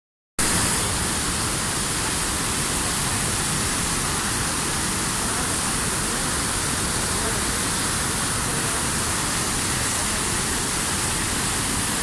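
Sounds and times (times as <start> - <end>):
waterfall rushing: 0.4 - 12.0.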